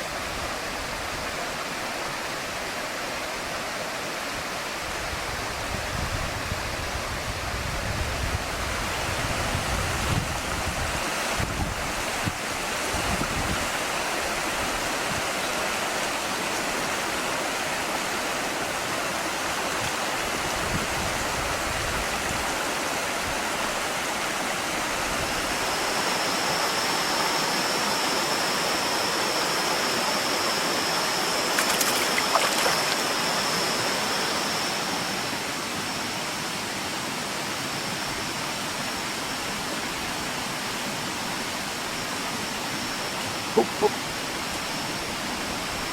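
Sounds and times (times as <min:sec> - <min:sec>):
river water rushing: 0:00.0 - 0:05.7, 0:21.2 - 0:45.9
steady high whine: 0:00.0 - 0:45.9.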